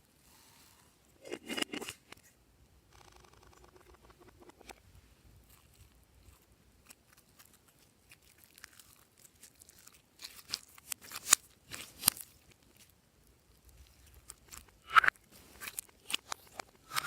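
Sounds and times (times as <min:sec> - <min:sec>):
crisp clicks and crackles: 0:05.4 - 0:17.0.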